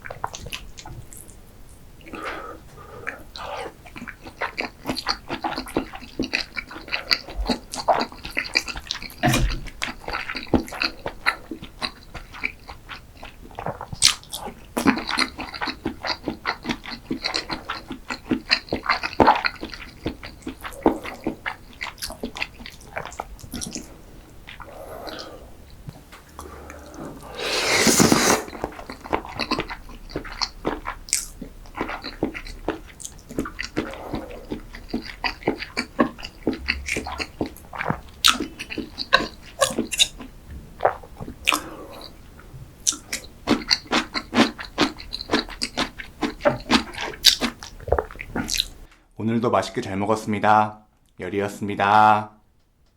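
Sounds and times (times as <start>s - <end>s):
chewing with wet mouth clicks: 0.0s - 1.4s, 3.0s - 27.3s, 28.0s - 48.9s
rushing mouth sound: 9.2s - 9.7s, 23.5s - 29.0s.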